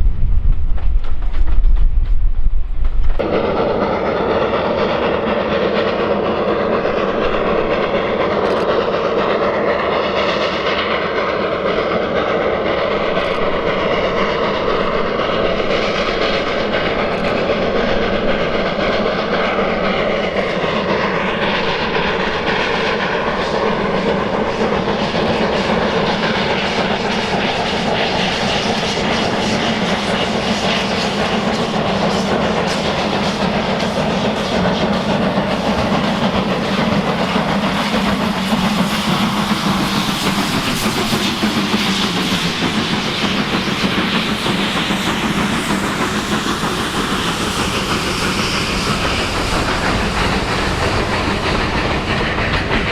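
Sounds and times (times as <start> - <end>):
train wheels rumbling on rail: 0.0 - 52.9.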